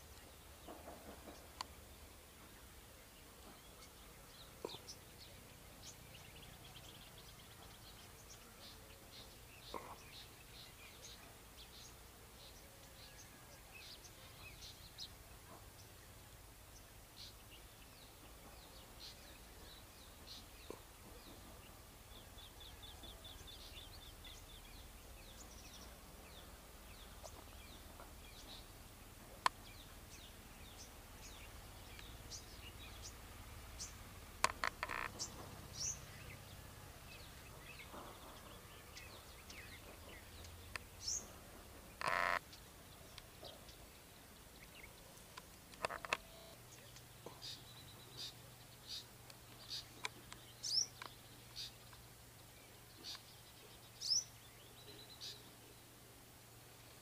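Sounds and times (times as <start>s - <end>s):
birds chirping: 0.0s - 57.0s
bird trilling: 34.5s - 36.0s, 42.0s - 42.4s.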